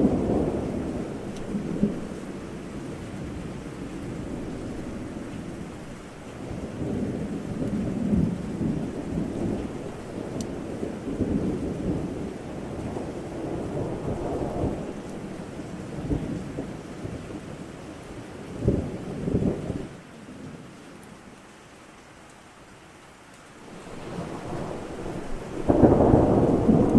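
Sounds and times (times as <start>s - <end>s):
thunder rumbling: 0.0s - 17.6s, 23.6s - 26.9s
steady rain: 0.0s - 26.9s
sharp thunder claps: 23.8s - 26.9s.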